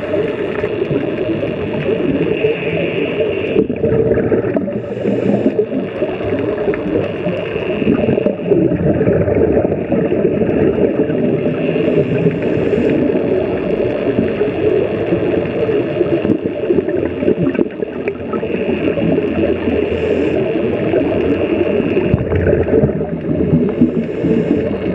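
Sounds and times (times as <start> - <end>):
bubbles gurgling: 0.0 - 24.9
diver breathing through regulator: 4.5 - 6.0, 11.4 - 13.5, 19.6 - 21.0, 22.8 - 24.9.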